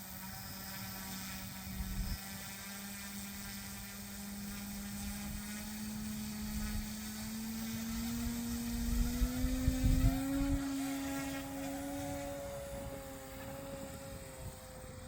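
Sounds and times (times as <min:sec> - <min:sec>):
rc helicopter motor whining: 0:00.0 - 0:15.0.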